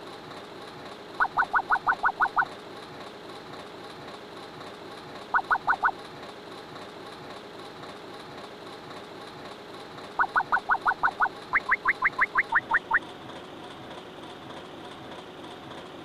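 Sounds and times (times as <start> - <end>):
steady background noise: 0.0 - 16.0
squeaky rising cartoon chirps: 1.2 - 2.5, 5.4 - 6.0, 10.2 - 13.0.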